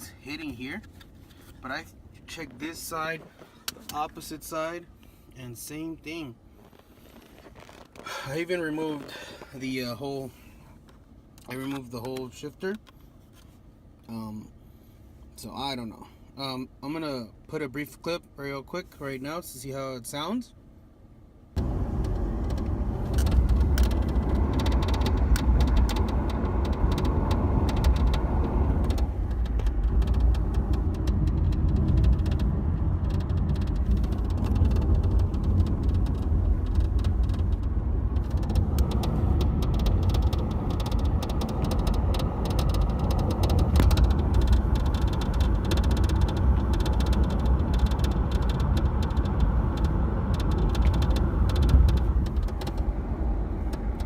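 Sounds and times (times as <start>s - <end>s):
road and drivetrain rumble: 0.0s - 54.0s
rapid clicking rattle: 21.6s - 52.9s.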